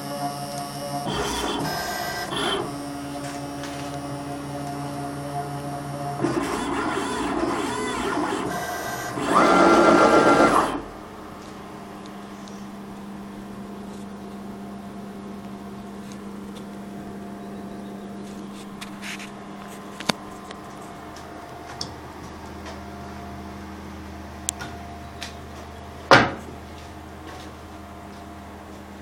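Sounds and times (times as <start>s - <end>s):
stepper motors whining: 0.0s - 18.8s
steady low hum: 0.0s - 29.0s.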